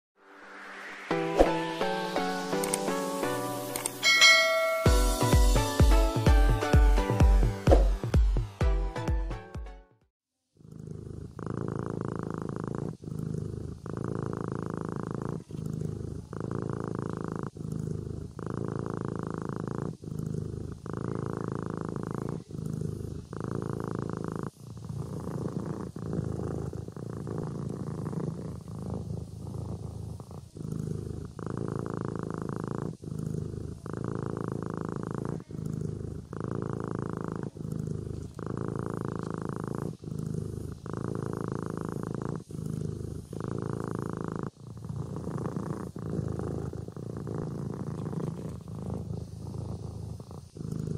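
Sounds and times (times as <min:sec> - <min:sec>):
kitten purring: 0:10.5 - 0:50.9.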